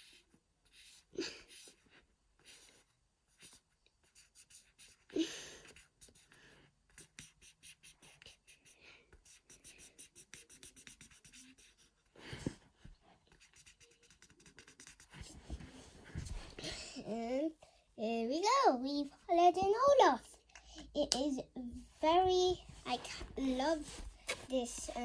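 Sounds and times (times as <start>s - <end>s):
marker scribbling on paper: 0.0s - 1.9s, 3.3s - 12.6s, 13.3s - 16.5s.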